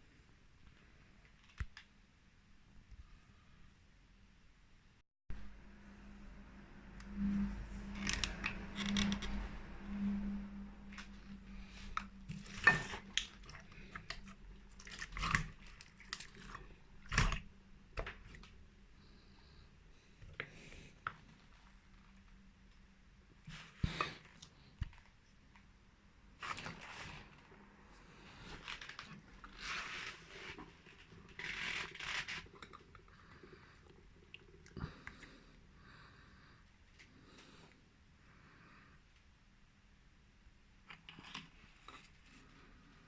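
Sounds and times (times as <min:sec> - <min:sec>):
slime squelches: 0:11.0 - 0:18.6.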